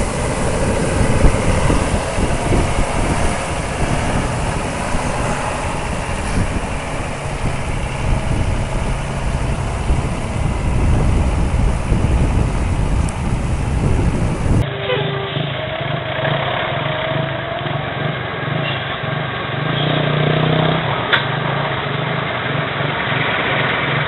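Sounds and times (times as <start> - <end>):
heavy vehicle engine running: 0.0 - 24.0.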